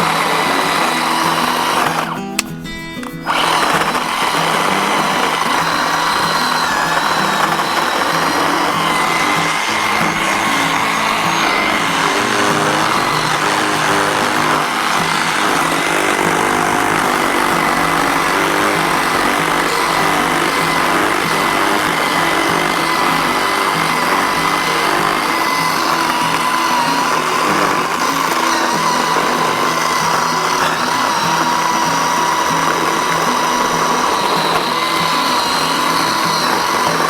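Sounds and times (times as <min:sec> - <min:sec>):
electric chainsaw whining: 0:00.0 - 0:37.0.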